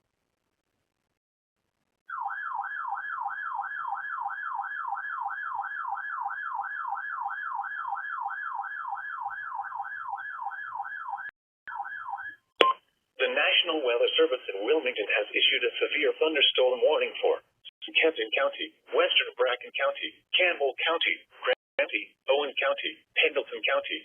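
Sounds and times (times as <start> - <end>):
electronic alert siren warble: 2.1 - 12.4.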